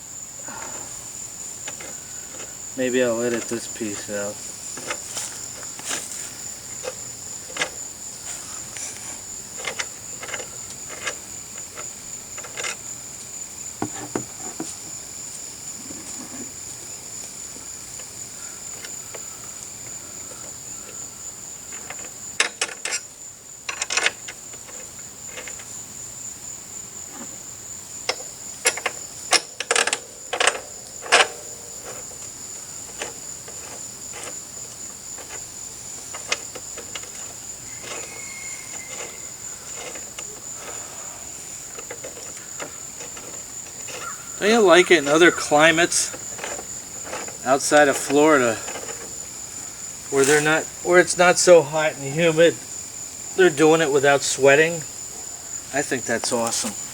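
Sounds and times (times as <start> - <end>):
insect chorus: 0.0 - 56.9
sharp clicks and knocks: 13.8 - 15.0, 23.7 - 25.7, 28.0 - 40.8, 41.7 - 49.2.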